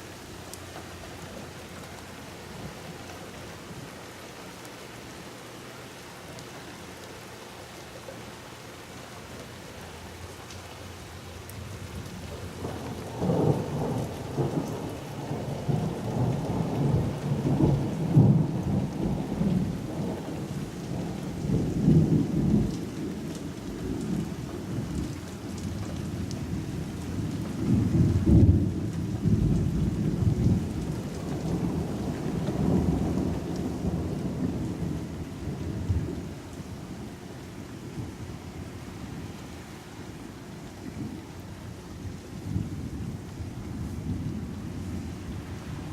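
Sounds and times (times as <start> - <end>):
steady rain: 0.0 - 45.9
rolling thunder: 11.6 - 25.1, 26.4 - 36.4.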